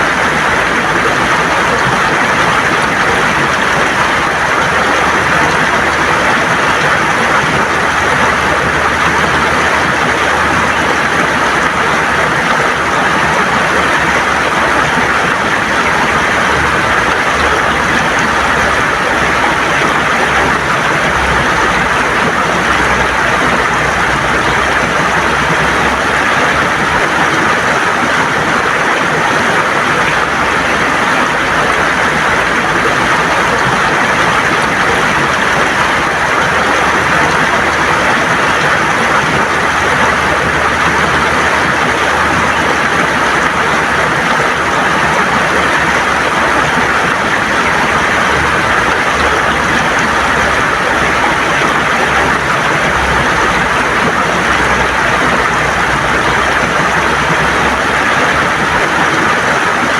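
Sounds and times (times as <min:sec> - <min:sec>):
river water rushing over stones: 0:00.0 - 0:59.9.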